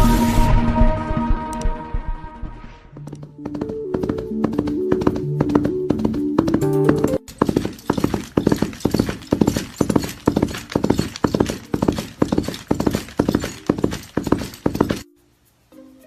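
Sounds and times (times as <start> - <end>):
music: 0.0 - 16.0
horse hoofbeats clip-clop: 3.0 - 15.1.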